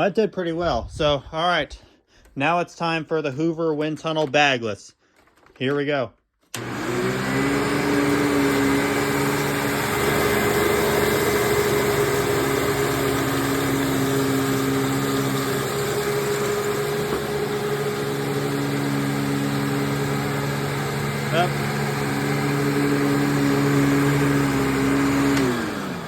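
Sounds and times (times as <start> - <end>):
vacuum cleaner running: 6.6 - 26.0.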